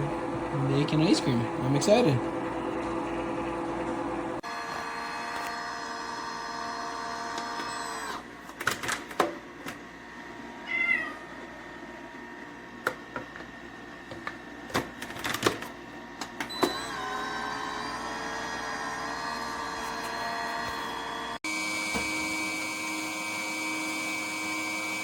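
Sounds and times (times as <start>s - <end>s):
ice cream maker humming: 0.0s - 25.0s
cat meow: 10.6s - 11.4s.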